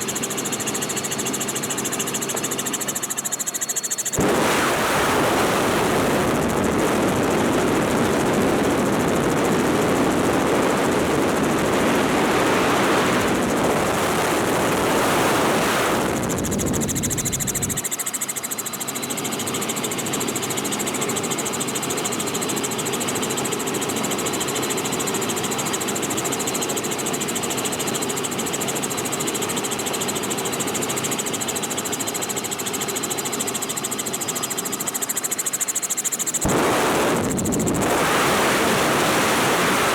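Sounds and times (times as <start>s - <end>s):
helicopter engine and rotor drone: 0.0s - 39.9s
high whine: 4.1s - 17.9s, 36.2s - 39.9s
wind rush on microphone: 4.2s - 17.8s, 36.4s - 39.9s.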